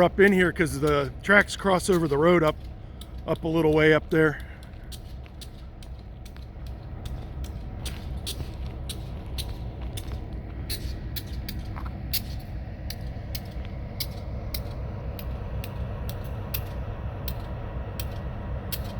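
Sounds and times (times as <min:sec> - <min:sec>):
diesel locomotives idling: 0:00.0 - 0:18.9.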